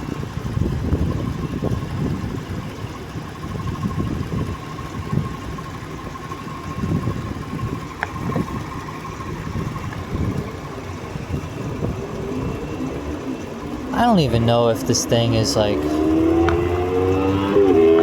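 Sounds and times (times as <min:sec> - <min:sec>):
car engine idling: 0:00.0 - 0:18.0
thin steady whine: 0:00.0 - 0:18.0.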